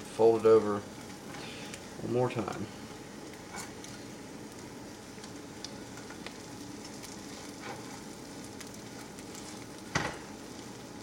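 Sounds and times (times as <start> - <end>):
eggs sizzling in a skillet: 0.0 - 11.0.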